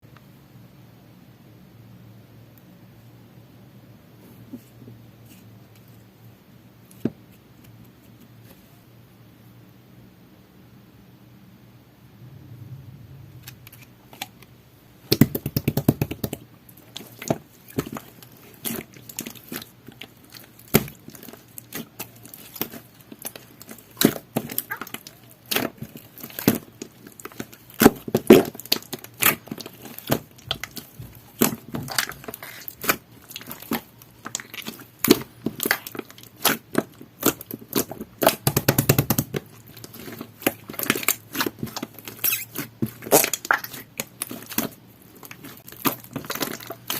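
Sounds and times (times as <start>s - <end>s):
slime squished by hand: 15.1s - 46.9s.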